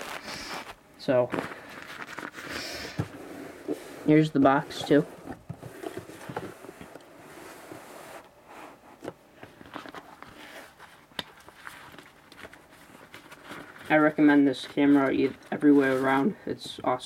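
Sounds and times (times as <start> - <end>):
cardboard box handling: 4.4 - 7.0.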